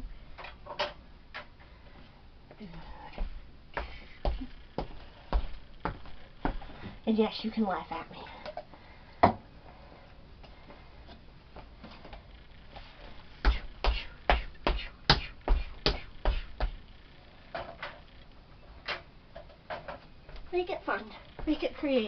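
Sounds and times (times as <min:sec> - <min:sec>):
dull thumps: 0:13.4 - 0:16.8.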